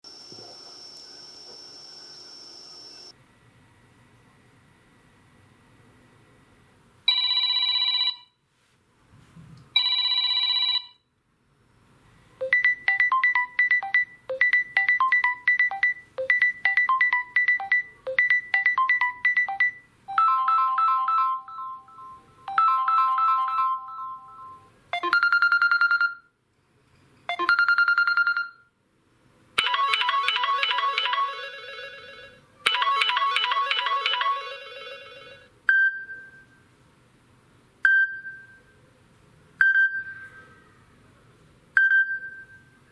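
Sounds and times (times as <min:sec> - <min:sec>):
phone ringtone melodies and chimes: 0:12.4 - 0:26.2, 0:27.3 - 0:28.6, 0:29.6 - 0:36.5.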